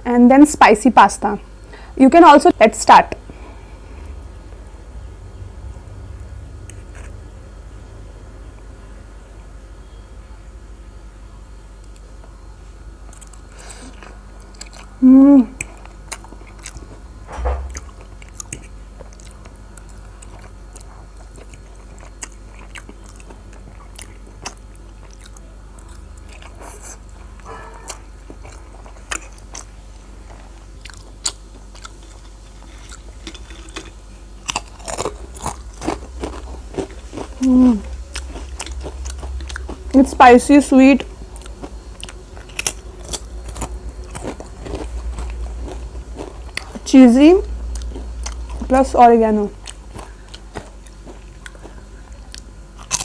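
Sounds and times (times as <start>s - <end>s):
crisp crunching while chewing: 13.0s - 15.0s, 15.6s - 40.1s, 41.0s - 46.9s, 47.5s - 48.8s, 49.6s - 53.0s
person humming mm: 15.0s - 15.7s, 37.4s - 37.9s.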